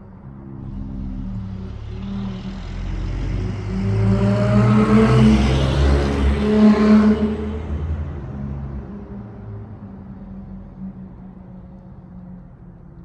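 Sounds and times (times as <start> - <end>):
car exhaust driving past: 0.4 - 9.4.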